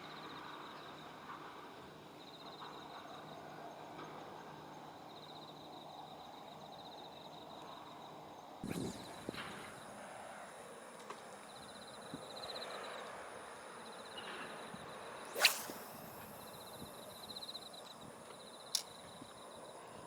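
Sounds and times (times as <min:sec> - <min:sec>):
spinning rod cast swish: 0:08.6 - 0:09.8, 0:15.2 - 0:17.2
insects chirping: 0:08.6 - 0:20.0.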